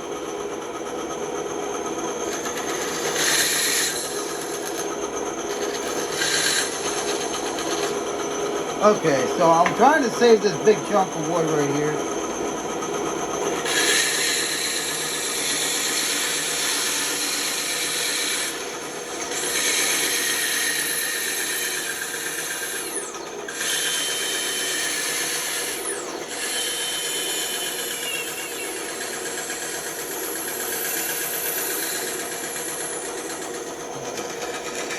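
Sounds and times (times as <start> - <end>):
bandsaw motor hum: 0.0 - 34.9
bandsaw cutting wood: 2.3 - 12.4, 13.4 - 34.9.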